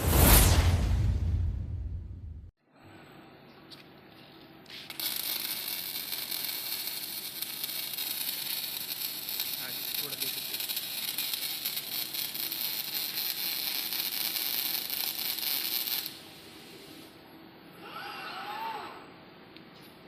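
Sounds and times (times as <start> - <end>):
welding arc crackling: 4.7 - 16.4.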